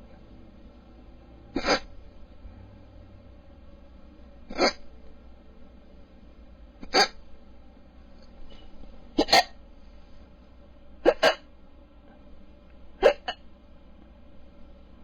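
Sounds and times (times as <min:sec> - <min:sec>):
person hiccupping: 0:01.6 - 0:01.9, 0:04.5 - 0:04.8, 0:09.2 - 0:09.5, 0:11.0 - 0:11.4, 0:13.0 - 0:13.4.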